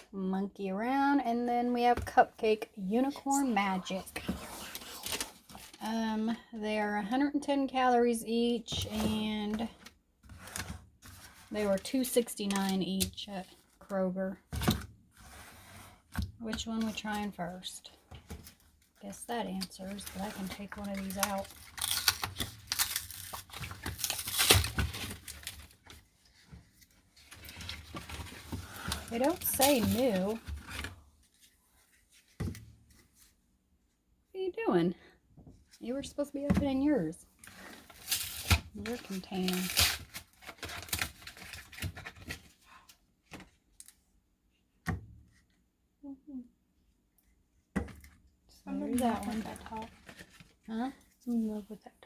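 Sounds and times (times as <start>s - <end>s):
plastic cups rustling and crinkling: 2.8s - 6.4s, 15.2s - 33.4s, 36.6s - 43.9s, 47.8s - 51.8s
packaging crinkling and tearing: 20.0s - 25.8s.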